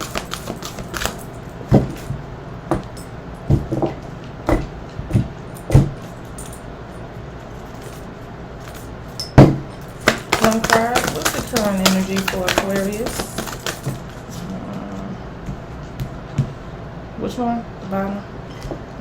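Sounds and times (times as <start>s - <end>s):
card deck being shuffled: 0.0s - 1.3s, 8.6s - 8.9s, 9.8s - 14.5s.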